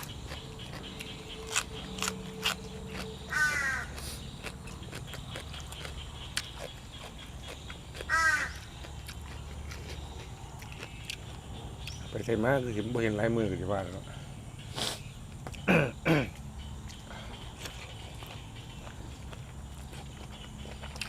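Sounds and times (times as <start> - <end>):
crow cawing: 3.3 - 4.0, 8.0 - 8.7.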